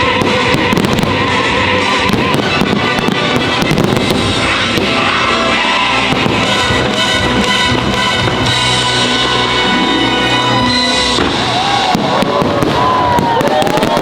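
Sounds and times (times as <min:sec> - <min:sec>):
fireworks bangs and crackle: 0:00.0 - 0:14.0
loud show music: 0:00.0 - 0:14.0.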